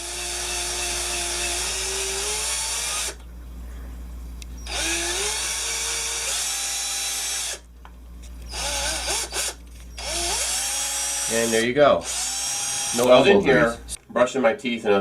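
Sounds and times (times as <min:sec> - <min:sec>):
power drill motor whine: 0:04.6 - 0:07.6, 0:08.5 - 0:13.2.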